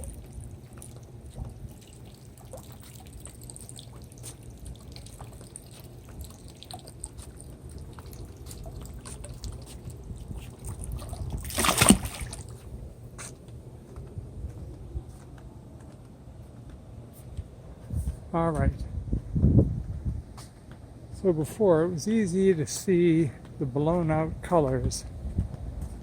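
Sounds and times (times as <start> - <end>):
liquid trickling and pouring: 0.0 - 13.0.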